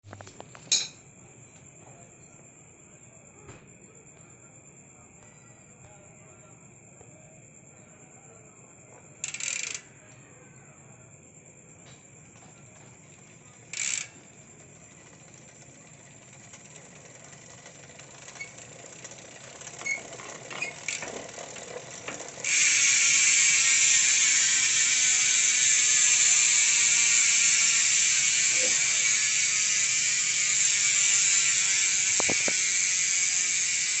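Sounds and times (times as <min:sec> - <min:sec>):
bicycle freehub ratchet buzzing: 0:09.1 - 0:10.0, 0:12.2 - 0:34.0.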